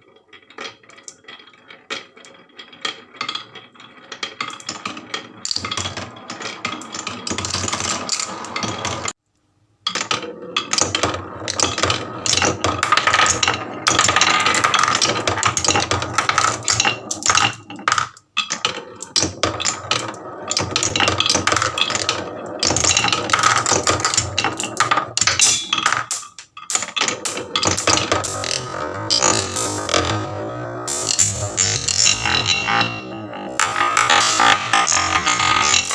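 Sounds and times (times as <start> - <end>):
marbles clattering down wooden run: 0.0 - 9.2, 9.9 - 30.3.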